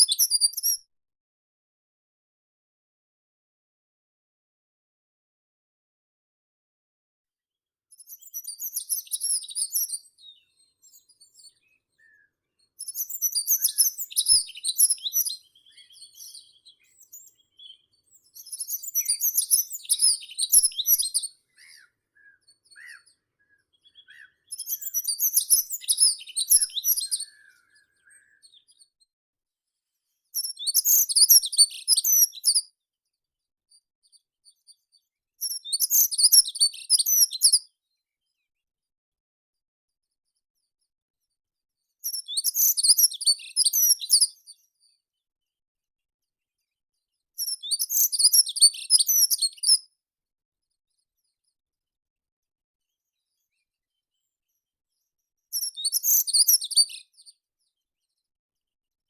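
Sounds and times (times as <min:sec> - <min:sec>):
songbird twittering song: 0:00.0 - 0:00.8, 0:07.9 - 0:29.0, 0:30.3 - 0:32.7, 0:35.4 - 0:37.6, 0:42.0 - 0:44.7, 0:47.4 - 0:49.8, 0:55.5 - 0:57.4
faint bird calls: 0:21.5 - 0:24.5.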